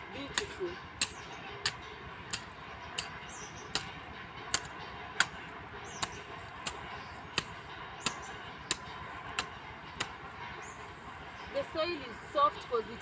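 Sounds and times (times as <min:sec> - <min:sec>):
hand hoe chopping into soil: 0:04.5 - 0:05.4.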